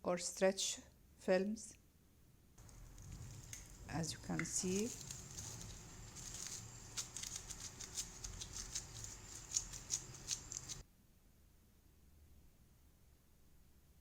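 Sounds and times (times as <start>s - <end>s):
plastic wrapping crinkling: 2.6s - 10.8s.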